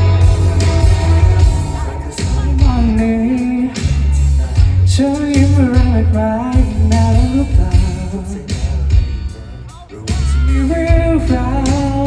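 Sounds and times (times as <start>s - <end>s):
man singing: 0.0s - 12.0s
pop song over sound system: 0.0s - 12.0s.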